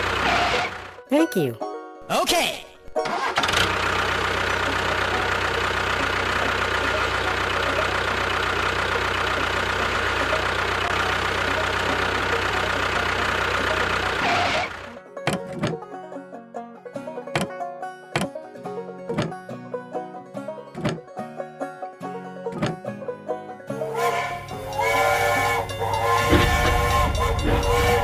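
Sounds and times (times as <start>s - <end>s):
engine running: 0.0s - 1.0s, 3.1s - 15.0s, 23.7s - 28.0s.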